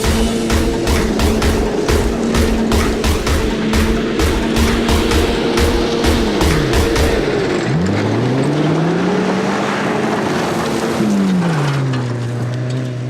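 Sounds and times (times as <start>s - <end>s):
car engine revving: 0.0s - 13.0s.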